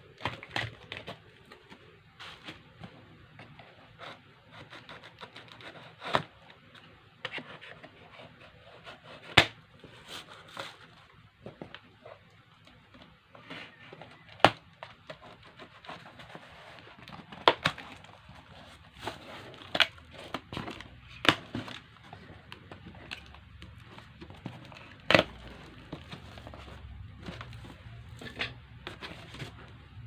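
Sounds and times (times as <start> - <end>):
packaging rustling and crinkling: 9.8 - 30.0.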